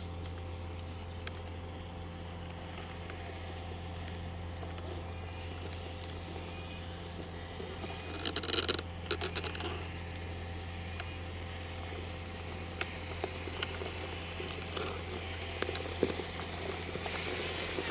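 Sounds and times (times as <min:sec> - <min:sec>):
small clicks and crackles: 0:00.0 - 0:17.9
toy truck motor humming: 0:00.0 - 0:17.9.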